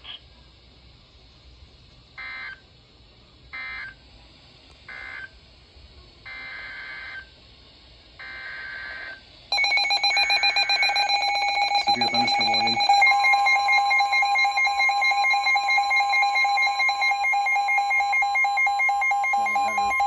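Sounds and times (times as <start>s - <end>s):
alert data bursts: 8.2s - 20.0s
steady alert attention tone: 9.5s - 20.0s.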